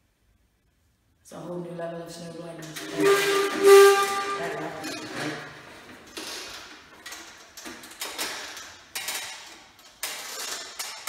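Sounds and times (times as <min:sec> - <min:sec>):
plastic scraping against ceiling: 0:02.6 - 0:11.0.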